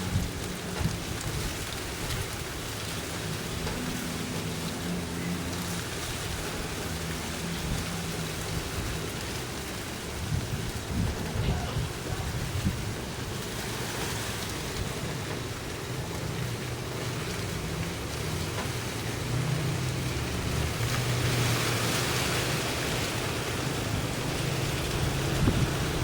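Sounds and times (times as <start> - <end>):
wind buffeting microphone: 0.0 - 26.0
wind rustling tree leaves: 0.0 - 26.0.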